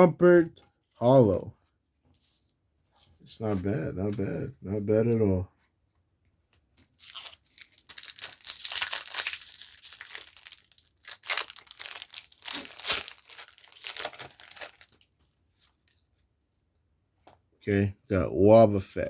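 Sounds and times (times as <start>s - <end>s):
foil wrapper crinkling and tearing: 7.0s - 15.1s.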